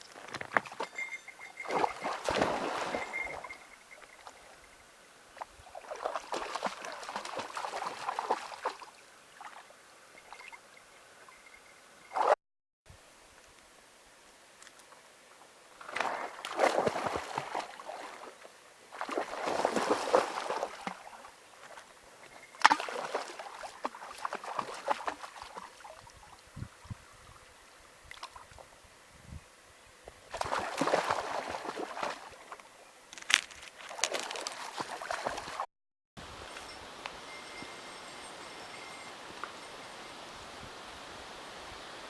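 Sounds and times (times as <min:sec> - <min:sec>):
water sloshing: 0:00.3 - 0:04.6, 0:05.4 - 0:10.6, 0:15.8 - 0:26.4, 0:30.3 - 0:35.7.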